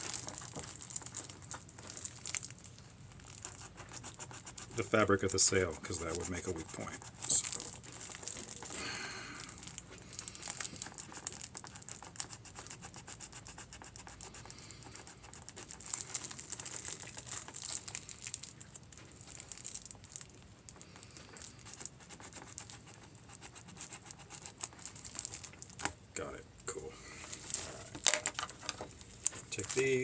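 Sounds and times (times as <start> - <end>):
stiff sailcloth crinkling: 27.2 - 30.0.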